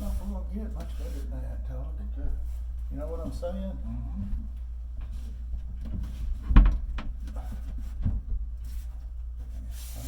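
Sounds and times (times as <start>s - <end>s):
steady low hum: 0.0s - 10.0s
wood knocking and clunking: 5.0s - 8.5s.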